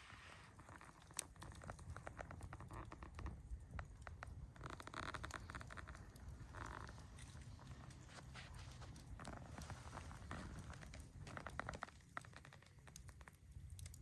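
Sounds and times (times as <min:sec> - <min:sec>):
campfire crackling and popping: 0:00.0 - 0:14.0.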